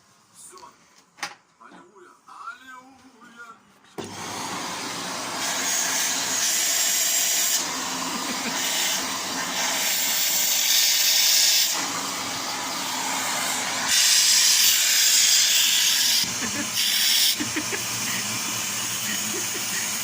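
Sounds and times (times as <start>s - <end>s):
vacuum cleaner suction hiss: 4.0s - 20.0s.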